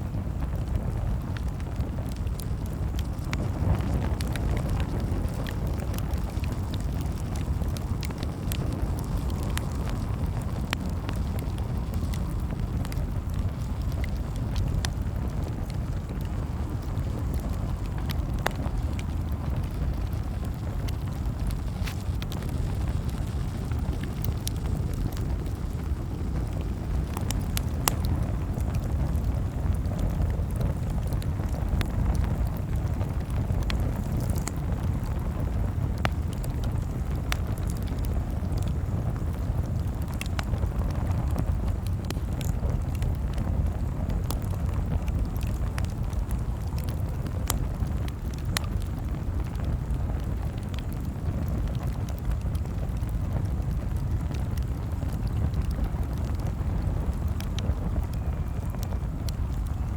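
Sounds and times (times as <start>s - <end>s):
campfire crackling: 0.0s - 59.9s.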